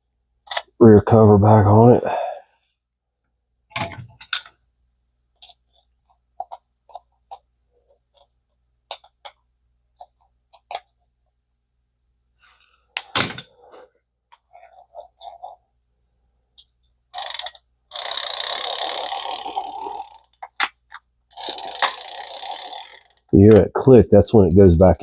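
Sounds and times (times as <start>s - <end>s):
small metal parts clicking and knocking: 3.7s - 4.6s, 16.6s - 23.6s.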